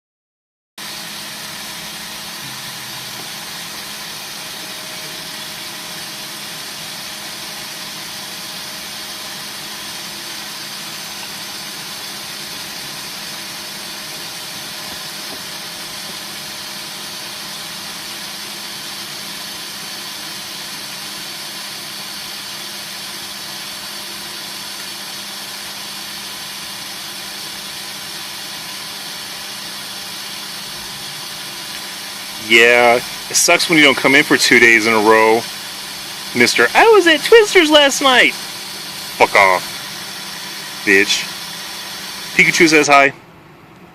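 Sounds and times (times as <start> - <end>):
machine hiss: 30.2 - 43.1.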